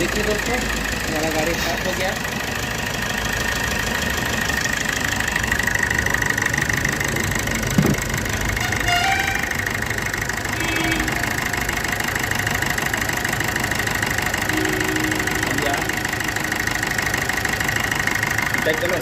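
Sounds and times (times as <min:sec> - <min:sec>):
diesel engine idling: 0:00.0 - 0:19.0
short engine knock: 0:04.8 - 0:08.6.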